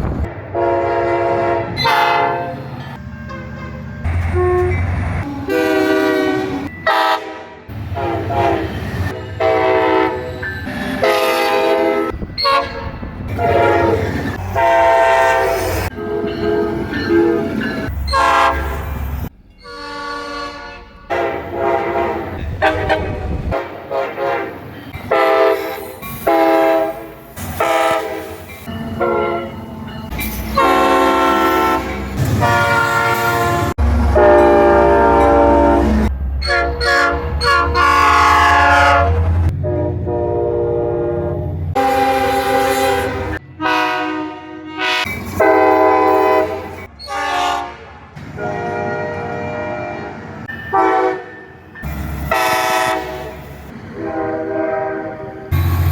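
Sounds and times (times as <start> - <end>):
low rumble of trains: 0.0 - 55.9
locomotive air horn blasts: 0.5 - 2.6, 3.3 - 10.4, 11.0 - 19.0, 19.6 - 29.6, 30.5 - 51.4, 52.3 - 55.6.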